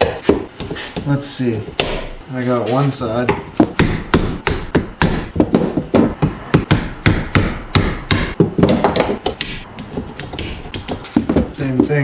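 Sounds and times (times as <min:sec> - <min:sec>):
hammer striking metal: 0:06.0 - 0:09.7.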